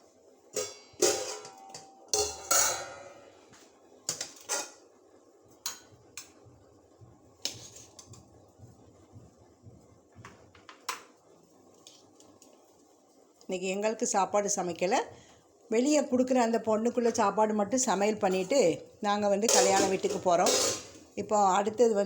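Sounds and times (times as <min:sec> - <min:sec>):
metal pots and utensils clinking: 0:00.5 - 0:03.3, 0:04.1 - 0:04.8, 0:19.4 - 0:21.1.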